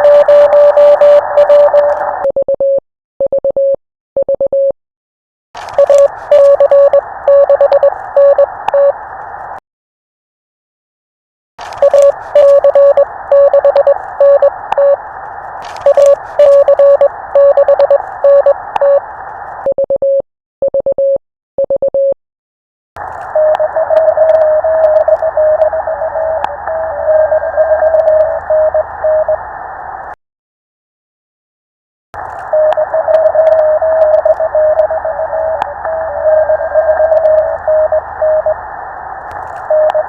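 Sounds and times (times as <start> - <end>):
radio static: 0.0 - 2.2, 5.6 - 9.6, 11.6 - 19.7, 23.0 - 30.2, 32.2 - 40.0
morse code tones: 0.0 - 4.8, 5.7 - 9.0, 11.8 - 15.0, 15.6 - 19.0, 23.3 - 29.4, 32.5 - 38.6, 39.6 - 40.0.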